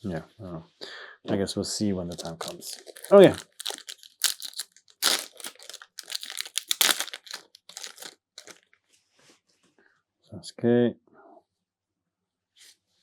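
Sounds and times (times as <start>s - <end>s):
foil wrapper tearing and crinkling: 2.1s - 8.6s.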